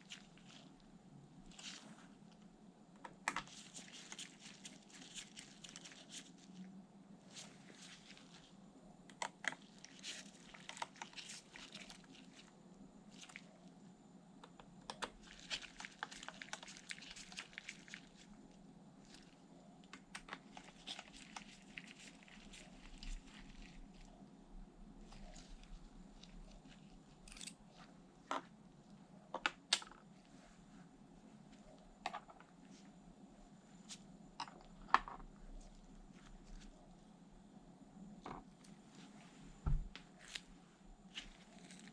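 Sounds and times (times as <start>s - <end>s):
steady low hum: 0.0s - 16.1s, 17.8s - 41.9s
hands handling small hard objects: 3.1s - 6.6s, 7.3s - 12.5s, 25.0s - 28.5s, 39.7s - 41.9s.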